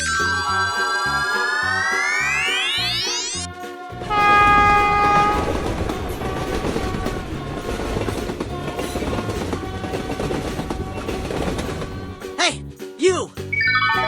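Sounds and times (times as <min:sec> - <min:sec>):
cartoon music: 0:00.0 - 0:07.0, 0:12.3 - 0:14.0
train wheels rumbling on rails: 0:04.0 - 0:12.3
train horn blast: 0:04.1 - 0:07.4.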